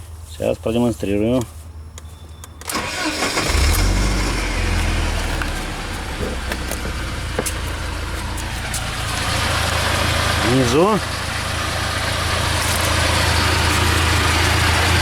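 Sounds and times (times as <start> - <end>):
car engine idling: 2.6 - 15.0
rattling knock underneath: 6.2 - 7.8.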